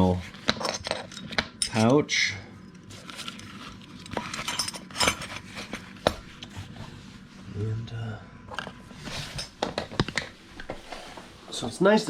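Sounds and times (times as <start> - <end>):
metal tools clinking in pouch: 0.4 - 2.0, 2.8 - 5.5.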